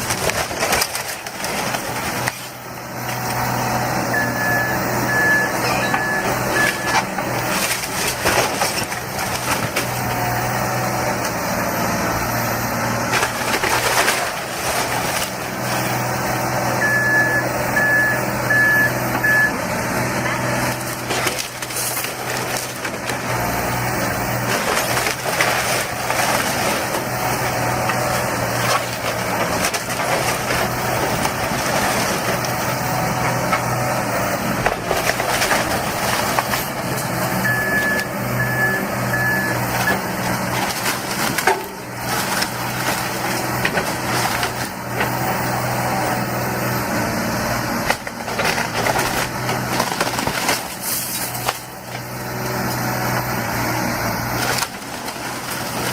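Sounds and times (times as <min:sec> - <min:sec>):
excavator diesel engine running: 0:00.0 - 0:55.9
short high beeps: 0:04.1 - 0:07.0, 0:16.8 - 0:19.6, 0:37.5 - 0:40.0.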